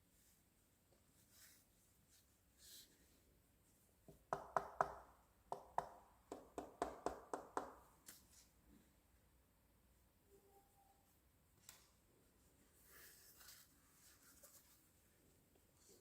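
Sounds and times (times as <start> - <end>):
sharp taps on hard object: 4.3 - 7.8.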